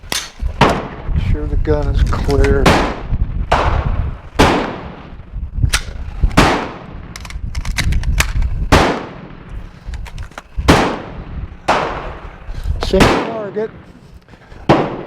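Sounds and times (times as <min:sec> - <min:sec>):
wind rumble on microphone: 0:00.0 - 0:15.0
gunshots with echoing tail: 0:00.1 - 0:01.0, 0:02.6 - 0:05.1, 0:05.8 - 0:07.1, 0:08.7 - 0:09.5, 0:10.7 - 0:12.2, 0:13.0 - 0:13.5, 0:14.7 - 0:15.0.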